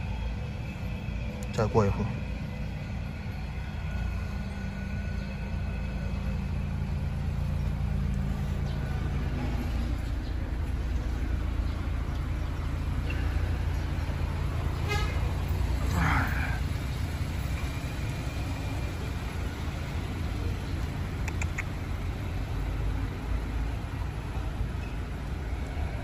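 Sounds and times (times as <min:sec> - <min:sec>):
traffic noise: 0:00.0 - 0:26.0
vehicle engine humming: 0:00.0 - 0:26.0.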